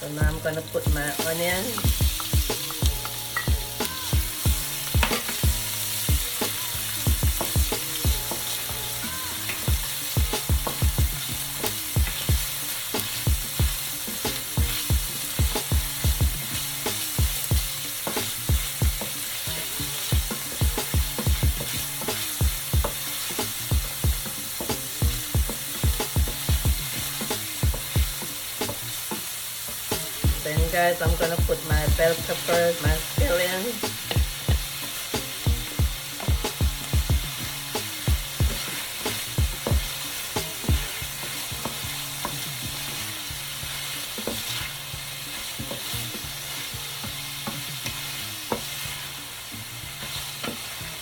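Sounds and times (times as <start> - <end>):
onion sizzling in hot oil: 0.0 - 51.0
utensil knocking while stirring: 1.8 - 8.4, 20.0 - 28.8, 33.0 - 42.8.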